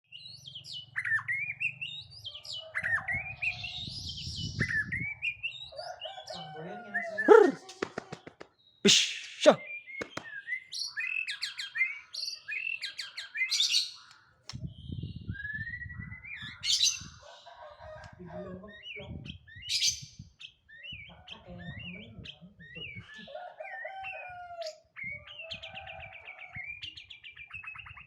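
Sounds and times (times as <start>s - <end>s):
songbird whistling song: 8.2s - 17.2s, 18.8s - 28.0s.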